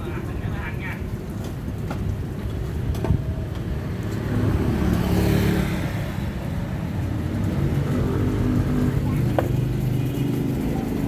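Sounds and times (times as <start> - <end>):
street traffic: 0.0 - 11.0
vehicle passing close by: 3.2 - 11.0.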